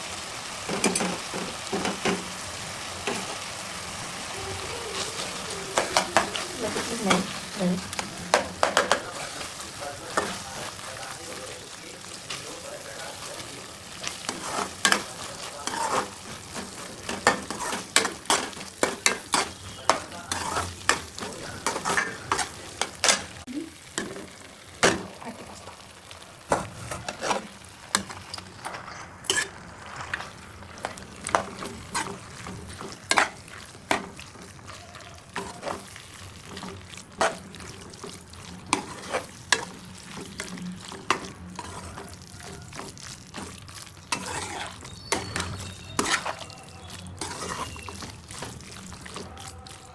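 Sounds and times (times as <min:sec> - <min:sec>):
pasta sizzling in a frying pan: 0:00.0 - 0:49.9
utensil scraping a pan: 0:12.2 - 0:23.3, 0:26.6 - 0:34.7, 0:35.3 - 0:49.4.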